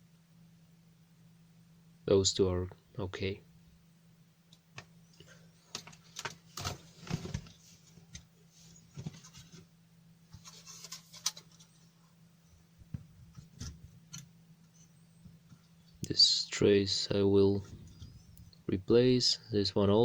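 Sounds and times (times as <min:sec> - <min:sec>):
faint low hum: 0:00.0 - 0:20.0
light clicks and rustles: 0:04.8 - 0:09.7, 0:10.3 - 0:11.9.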